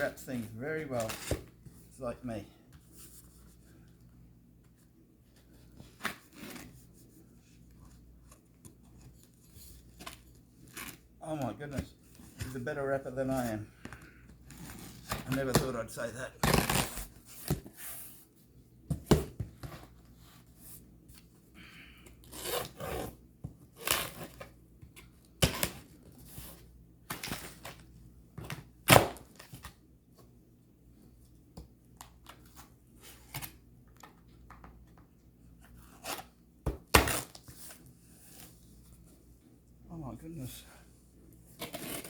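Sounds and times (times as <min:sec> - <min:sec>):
parcel wrapping tearing: 0:16.4 - 0:17.1.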